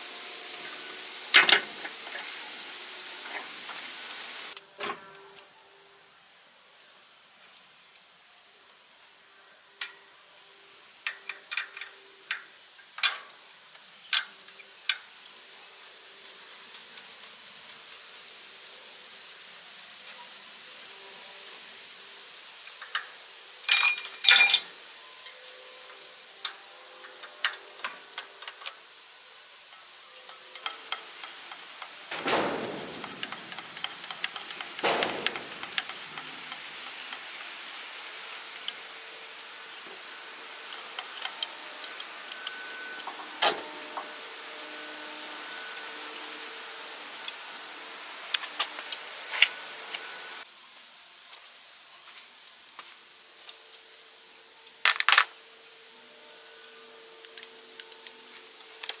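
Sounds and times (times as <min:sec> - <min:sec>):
hand tools clicking on metal: 0:11.1 - 0:13.2, 0:23.7 - 0:24.7, 0:30.3 - 0:37.2
ringing metallic clinks: 0:23.7 - 0:24.7, 0:32.1 - 0:36.3
high insect-like trill: 0:23.7 - 0:31.3.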